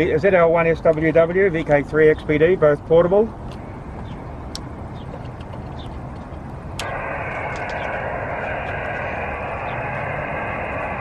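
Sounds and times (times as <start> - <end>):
low rumble: 6.6 - 11.0
radio receiver hiss: 6.8 - 11.0.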